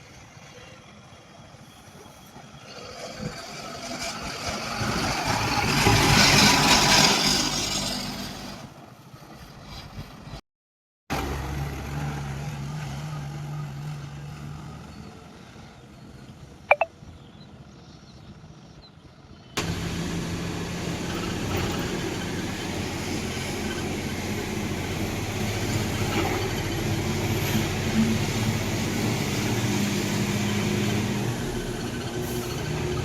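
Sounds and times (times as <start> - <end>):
engine humming steadily: 19.6 - 33.0
heavy vehicle engine: 19.6 - 33.0.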